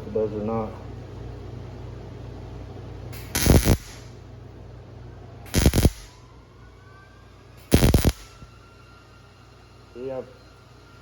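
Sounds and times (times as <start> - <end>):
welding machine hum: 3.1 - 4.2, 5.4 - 6.2, 7.6 - 8.6
welding arc crackling: 3.2 - 4.1, 5.5 - 6.2, 7.6 - 8.4.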